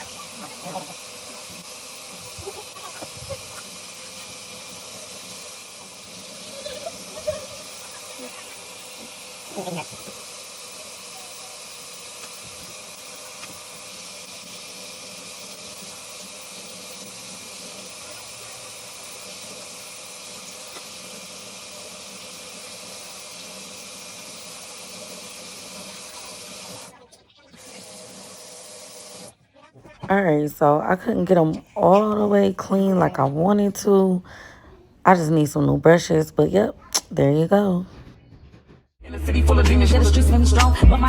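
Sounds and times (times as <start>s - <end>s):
tap water running into sink: 0.0s - 26.9s.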